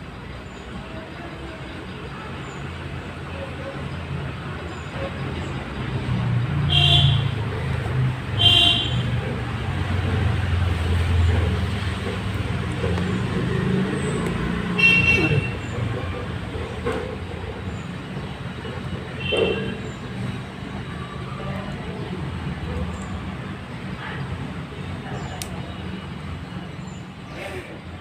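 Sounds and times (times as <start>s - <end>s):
road traffic rumble: 0.0s - 28.0s
short horn toots: 14.8s - 15.6s.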